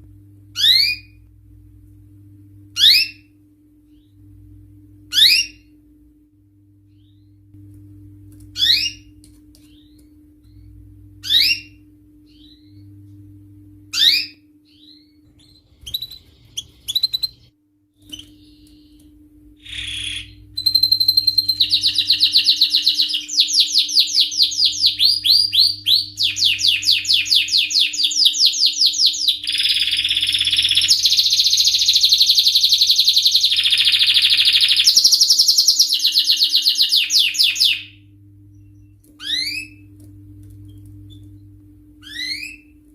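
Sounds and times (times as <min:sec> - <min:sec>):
canary chirps: 0:00.6 - 0:01.2, 0:02.8 - 0:03.3, 0:05.1 - 0:05.8, 0:08.6 - 0:13.0, 0:13.9 - 0:39.9, 0:41.1 - 0:42.8
canary rolling trills: 0:15.3 - 0:18.9, 0:19.6 - 0:37.8.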